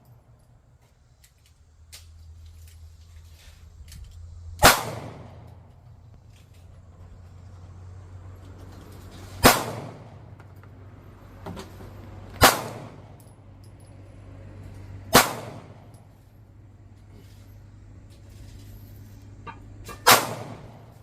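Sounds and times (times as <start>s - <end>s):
handgun shots: 4.6s - 5.5s, 9.4s - 10.1s, 12.4s - 13.0s, 15.1s - 15.8s, 19.9s - 20.8s.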